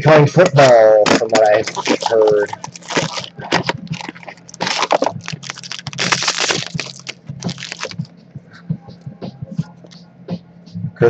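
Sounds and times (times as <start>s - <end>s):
foil wrapper crinkling and tearing: 0.5s - 8.0s.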